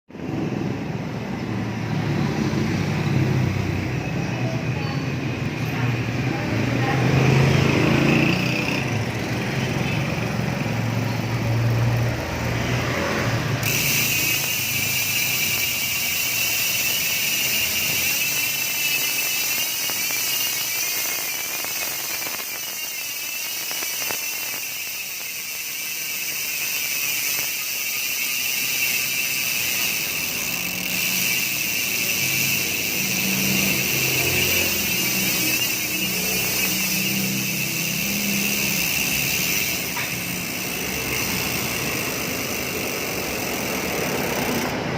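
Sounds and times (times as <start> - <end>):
bicycle freehub ratchet buzzing: 0.1 - 44.9.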